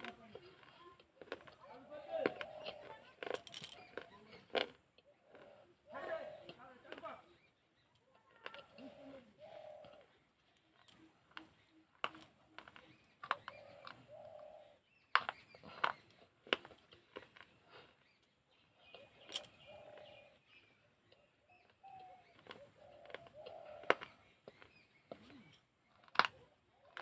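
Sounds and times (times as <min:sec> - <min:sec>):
teeth crunching clay shards: 0:00.0 - 0:05.6, 0:10.8 - 0:14.0, 0:15.1 - 0:18.2, 0:21.7 - 0:27.0
pigeon cooing: 0:01.9 - 0:03.2, 0:05.0 - 0:06.6, 0:08.4 - 0:14.9, 0:18.8 - 0:20.5, 0:21.2 - 0:25.6.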